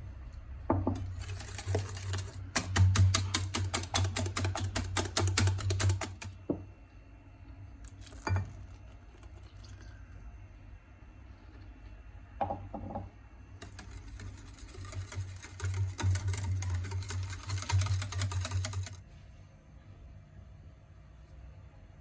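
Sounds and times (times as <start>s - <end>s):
whisk clattering against bowl: 0.8s - 6.3s, 13.6s - 19.0s.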